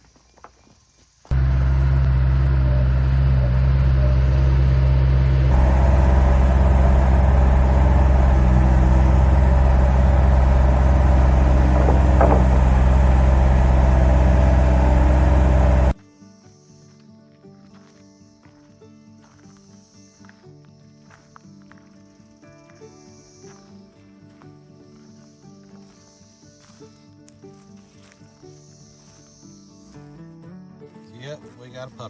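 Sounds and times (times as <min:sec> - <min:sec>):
engine running: 0:01.3 - 0:16.0.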